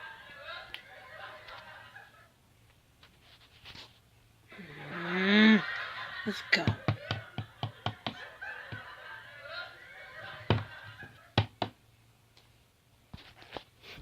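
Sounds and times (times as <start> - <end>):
faint laughter: 4.5 - 11.4
knocks on hard surface: 6.6 - 8.8, 10.5 - 10.7, 11.4 - 11.8.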